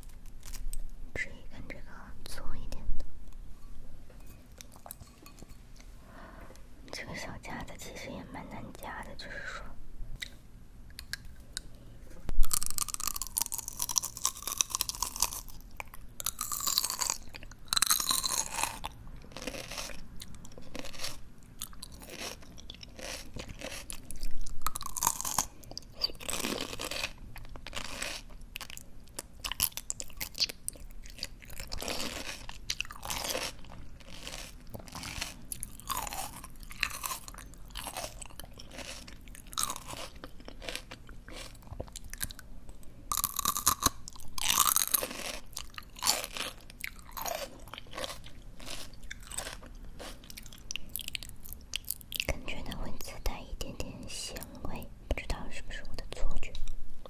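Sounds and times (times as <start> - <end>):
wet crunching chewing: 12.4 - 42.4, 43.1 - 52.4.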